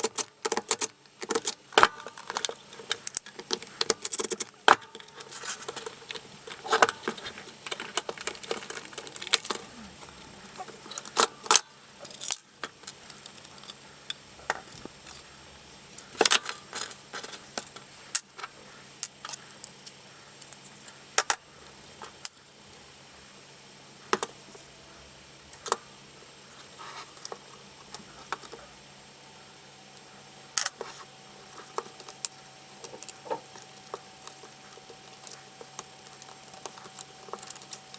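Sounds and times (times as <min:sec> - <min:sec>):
small hard parts clicking and clattering: 0:00.0 - 0:21.4, 0:30.6 - 0:37.9.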